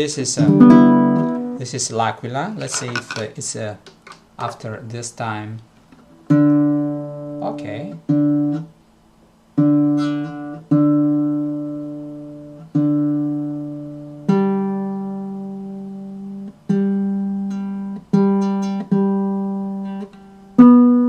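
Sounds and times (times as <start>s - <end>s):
ukulele chords strummed: 0.0s - 1.6s, 6.3s - 8.7s, 9.6s - 21.0s.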